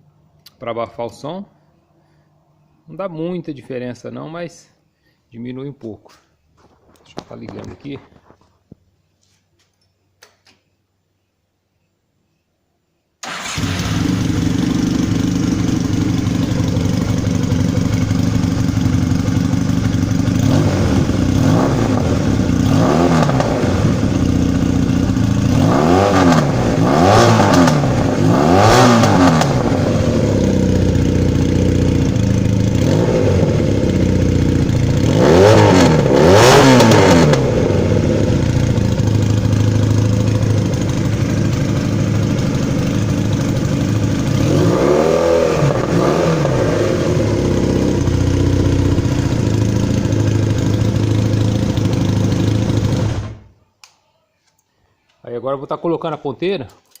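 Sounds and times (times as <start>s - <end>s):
motorcycle engine revving: 13.2s - 53.5s.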